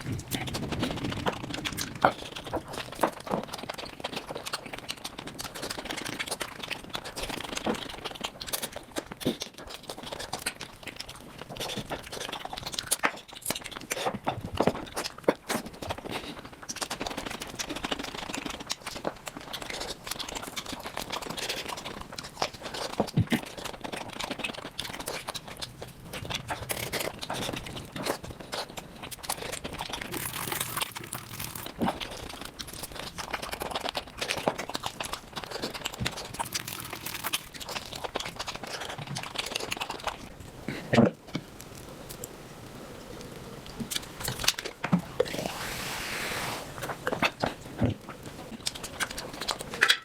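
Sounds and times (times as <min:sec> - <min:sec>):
wet chewing: 0:00.0 - 0:42.3, 0:46.8 - 0:49.8
tearing meat off bones: 0:29.4 - 0:40.2.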